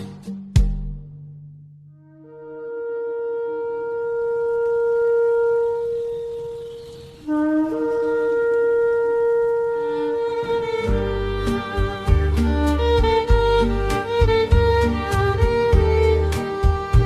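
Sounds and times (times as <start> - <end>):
shofar blasts: 2.0 - 12.4.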